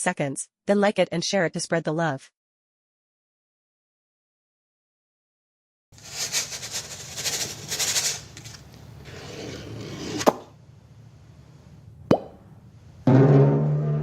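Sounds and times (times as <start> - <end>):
scraping and rubbing: 6.0 - 10.5.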